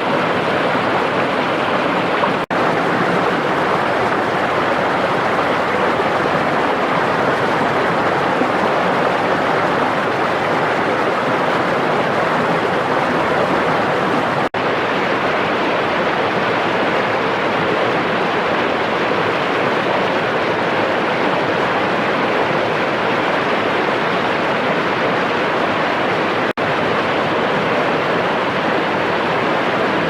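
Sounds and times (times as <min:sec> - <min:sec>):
waterfall rushing: 0:00.0 - 0:22.3.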